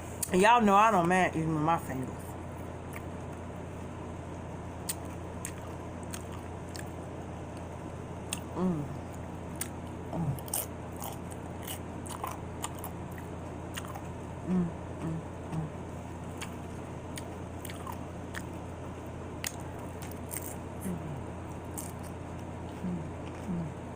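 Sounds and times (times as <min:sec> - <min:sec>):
chewing and crunching chips: 0:04.8 - 0:14.2, 0:15.0 - 0:18.7, 0:19.4 - 0:23.9
person humming: 0:08.4 - 0:09.2, 0:10.1 - 0:10.6, 0:14.4 - 0:15.9, 0:20.8 - 0:21.4, 0:22.7 - 0:23.9.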